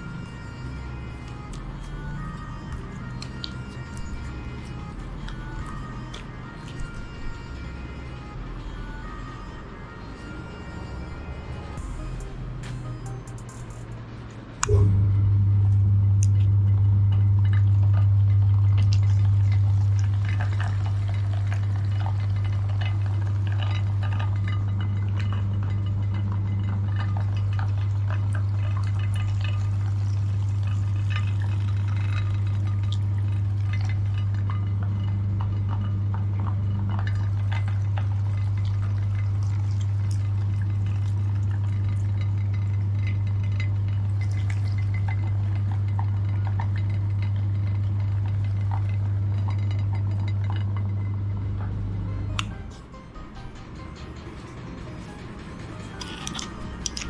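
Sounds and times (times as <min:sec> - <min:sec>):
meat grinder motor humming: 0:16.7 - 0:57.0.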